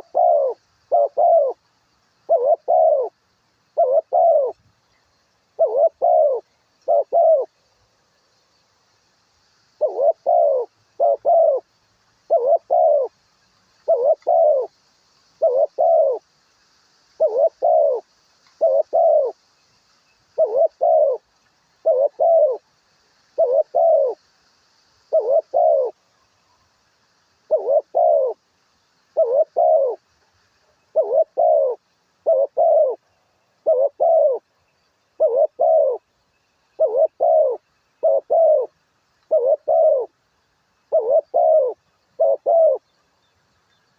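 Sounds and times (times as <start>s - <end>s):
dove cooing: 0.0s - 1.6s, 2.2s - 4.6s, 5.5s - 7.6s, 9.8s - 11.7s, 12.3s - 13.2s, 13.8s - 14.7s, 15.4s - 16.2s, 17.2s - 19.4s, 20.4s - 22.7s, 23.4s - 24.2s, 25.1s - 26.0s, 27.5s - 28.4s, 29.1s - 30.0s, 30.8s - 36.1s, 36.7s - 40.2s, 40.9s - 42.9s
faint high bird chirping: 0.0s - 24.3s, 27.5s - 43.9s.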